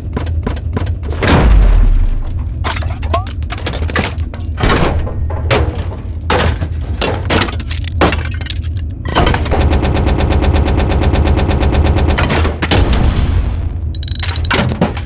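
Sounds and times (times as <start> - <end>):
low industrial hum: 0.0 - 15.0
metallic clacks: 13.9 - 15.0.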